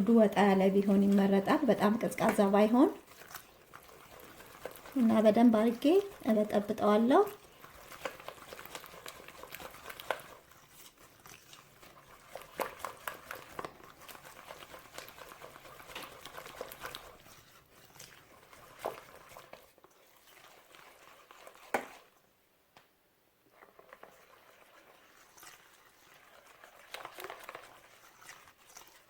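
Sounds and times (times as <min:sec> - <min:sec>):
batter being beaten in a bowl: 0:00.4 - 0:10.6, 0:11.7 - 0:17.4.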